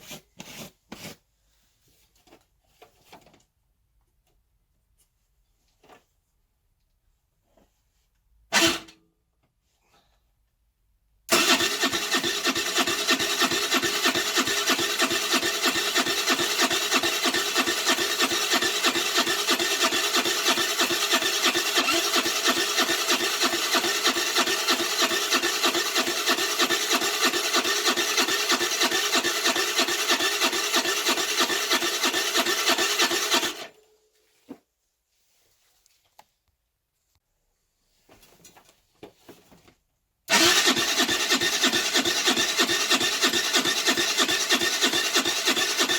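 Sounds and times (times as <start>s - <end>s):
electric starter cranking engine: 8.6s - 9.0s, 11.3s - 33.8s, 40.3s - 45.9s.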